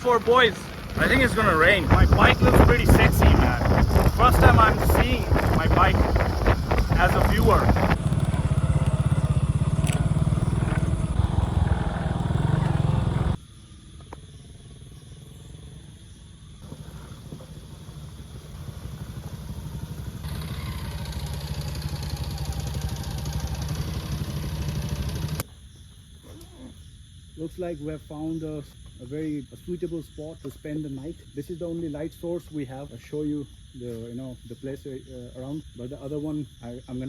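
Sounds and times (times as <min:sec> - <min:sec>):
motorcycle engine running: 0:00.0 - 0:13.4, 0:16.6 - 0:25.4.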